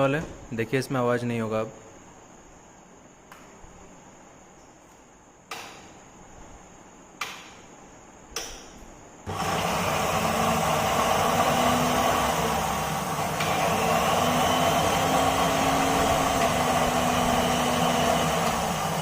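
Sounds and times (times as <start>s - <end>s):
mixer grinder motor humming: 9.3s - 19.0s.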